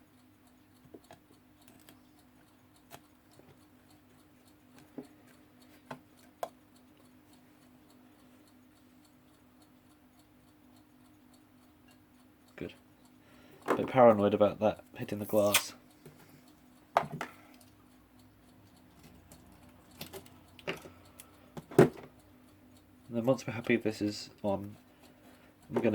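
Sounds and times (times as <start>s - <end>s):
alarm clock ticking: 0.0s - 25.9s
handling clicks and taps: 13.6s - 14.1s, 17.0s - 17.4s, 25.7s - 25.9s.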